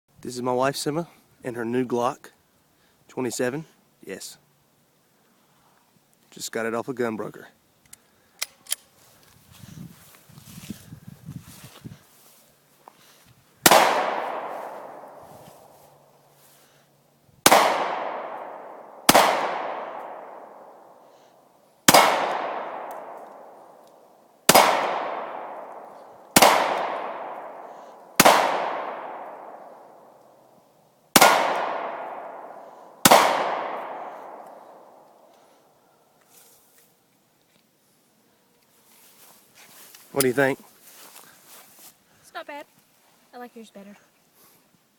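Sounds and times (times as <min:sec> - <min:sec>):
pistol shots with echo: 0:13.6 - 0:15.7, 0:17.4 - 0:21.0, 0:21.9 - 0:23.8, 0:24.5 - 0:30.1, 0:31.1 - 0:35.1.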